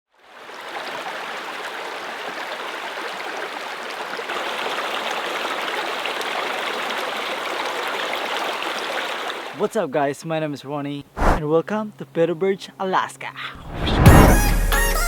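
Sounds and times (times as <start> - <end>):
running water rushing: 0.2 - 9.6.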